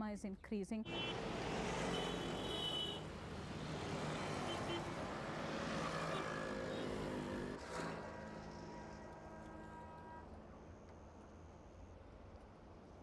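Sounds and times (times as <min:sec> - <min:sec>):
road traffic engines: 0:00.9 - 0:13.0.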